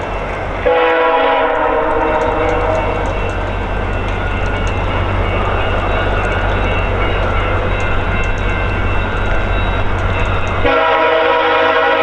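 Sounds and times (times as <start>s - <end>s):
diesel locomotive horn: 0.6s - 3.3s, 10.6s - 12.0s.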